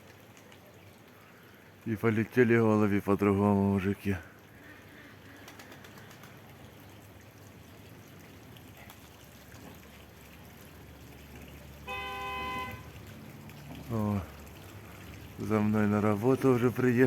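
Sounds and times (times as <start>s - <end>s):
car horn beep: 11.8s - 12.9s.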